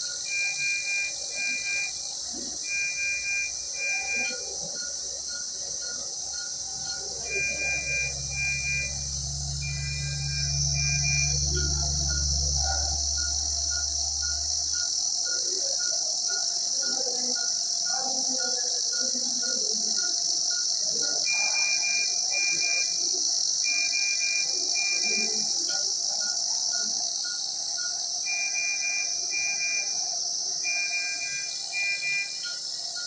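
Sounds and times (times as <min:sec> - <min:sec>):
patient monitor beeping: 0:00.0 - 0:33.0
higher alarm tone pulses: 0:02.6 - 0:14.9, 0:30.7 - 0:32.6
low hum: 0:07.5 - 0:14.7.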